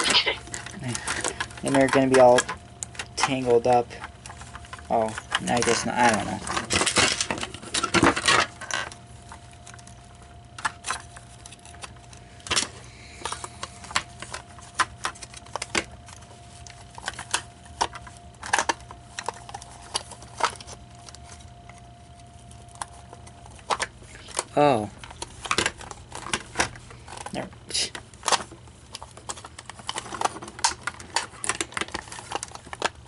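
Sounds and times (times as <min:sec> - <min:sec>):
plastic and metal parts clicking: 0:22.8 - 0:33.0.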